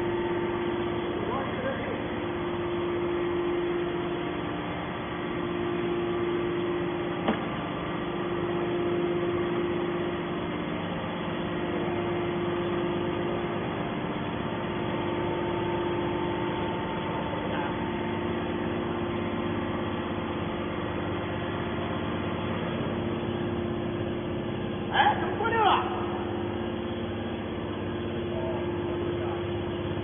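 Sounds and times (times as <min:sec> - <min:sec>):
baler motor and pump humming: 0:00.0 - 0:30.0.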